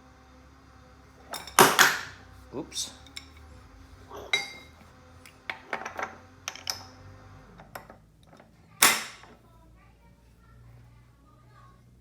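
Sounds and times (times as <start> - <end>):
metal tools clinking: 1.3 - 2.2, 2.9 - 7.0.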